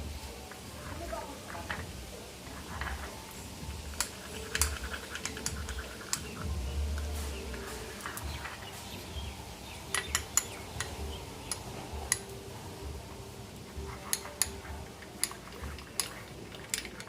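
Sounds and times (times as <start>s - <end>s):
metal spoon clinking against bowl: 3.9s - 8.5s, 9.9s - 12.3s, 13.8s - 17.0s.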